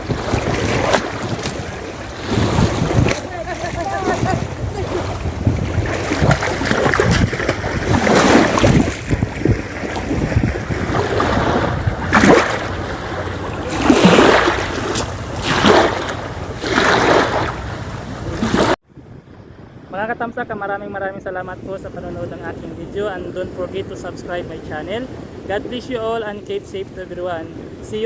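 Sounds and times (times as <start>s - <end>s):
sea waves washing onto beach: 0.0s - 18.8s
wind buffeting microphone: 0.0s - 28.0s.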